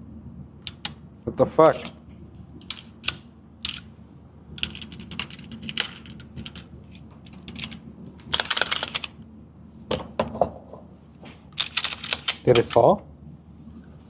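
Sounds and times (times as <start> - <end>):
pistol metallic clicks and rattles: 2.6 - 3.9, 4.6 - 9.2, 11.6 - 12.9.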